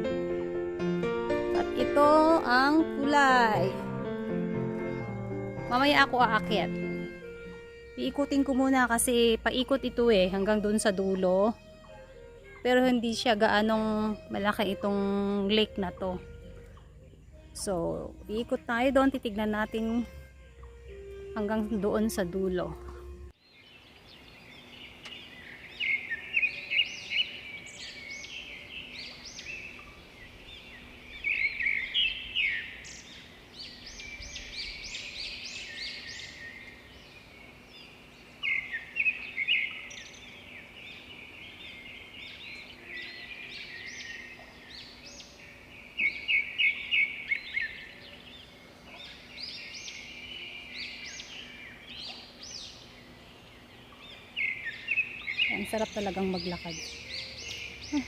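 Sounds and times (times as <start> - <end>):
faint outdoor background: 0.0 - 58.0
small birds chirping: 0.0 - 58.0.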